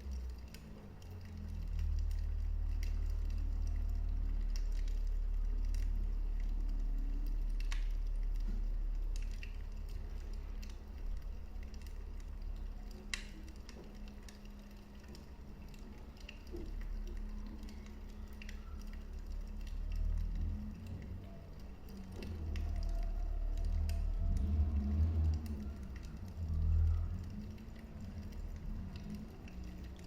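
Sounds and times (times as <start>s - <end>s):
fire crackling and popping: 0.0s - 30.0s
low fire rumble: 0.0s - 30.0s.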